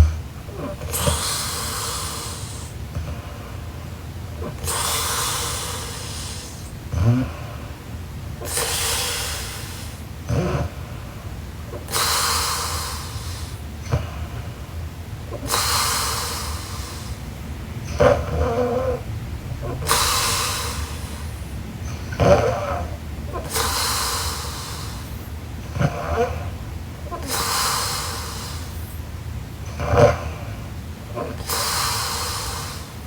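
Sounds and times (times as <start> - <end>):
woman snoring: 19.6 - 21.5, 22.2 - 25.2, 27.1 - 29.0.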